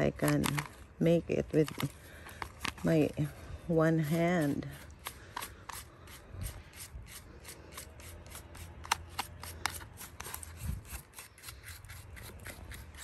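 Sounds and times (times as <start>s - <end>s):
brush scrubbing: 3.8s - 13.0s.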